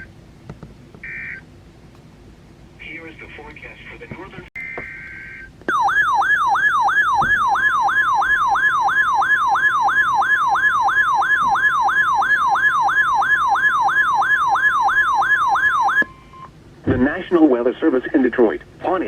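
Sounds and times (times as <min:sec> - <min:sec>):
electronic siren alert tone: 0:01.0 - 0:01.4, 0:04.6 - 0:16.5.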